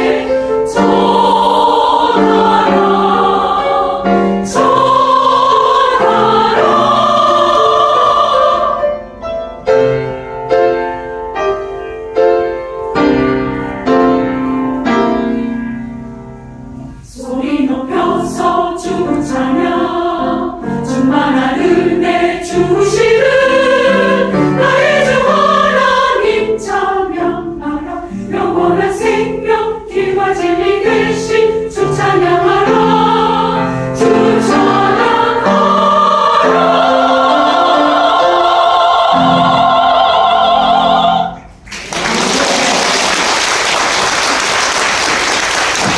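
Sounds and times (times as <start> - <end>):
choir singing a hymn: 0.0 - 16.0, 16.7 - 41.6
piano accompaniment: 0.0 - 42.0.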